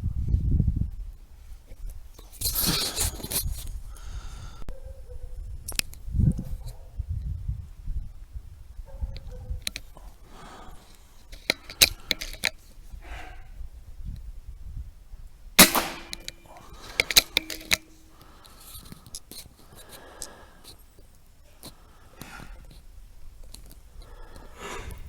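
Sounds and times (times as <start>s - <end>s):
handling clicks: 10.9s - 12.6s, 15.6s - 21.8s
rifle shot: 15.6s - 18.0s.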